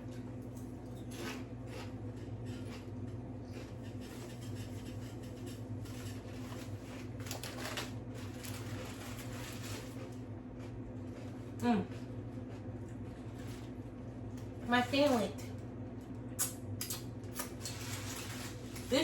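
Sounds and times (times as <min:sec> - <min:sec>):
low electrical hum: 0:00.0 - 0:19.0
chewing with moist clicks: 0:10.0 - 0:13.2, 0:15.6 - 0:17.6.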